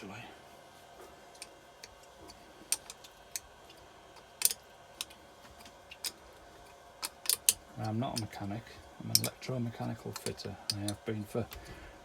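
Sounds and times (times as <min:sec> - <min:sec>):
hand tools clicking on metal: 0:07.0 - 0:11.7.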